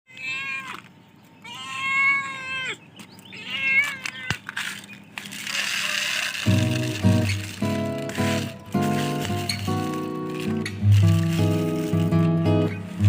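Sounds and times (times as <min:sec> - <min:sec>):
cats meowing: 0:00.1 - 0:04.5
music: 0:06.5 - 0:13.0.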